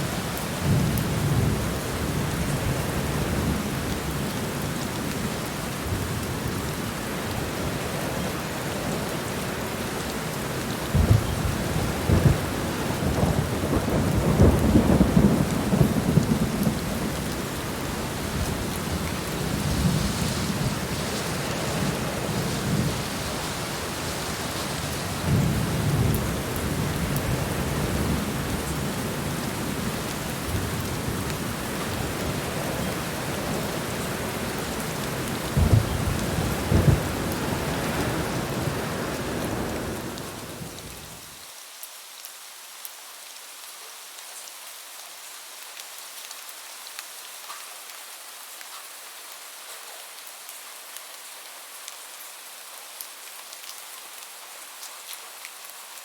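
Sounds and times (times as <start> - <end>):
heavy rain falling: 0.0 - 56.0
thunder rumbling: 10.9 - 41.0.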